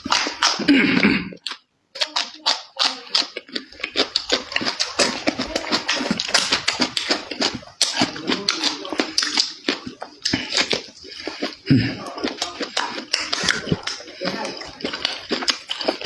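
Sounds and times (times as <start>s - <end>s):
wet chewing and lip-smacking: 0.0s - 16.0s.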